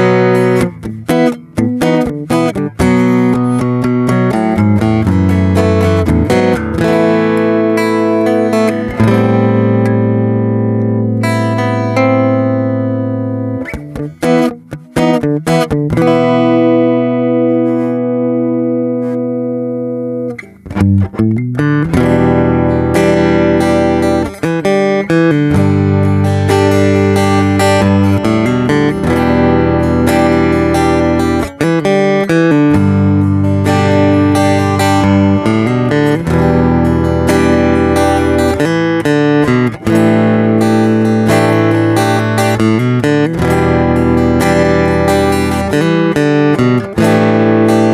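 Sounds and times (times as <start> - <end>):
acoustic guitar chords: 0.0 - 47.9
acoustic guitar picked notes: 0.0 - 47.9.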